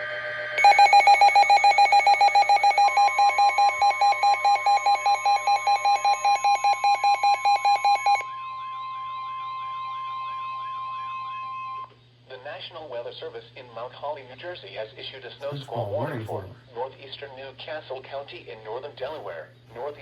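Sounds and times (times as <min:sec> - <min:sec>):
rapid pulsing alarm beeps: 0:00.6 - 0:08.2.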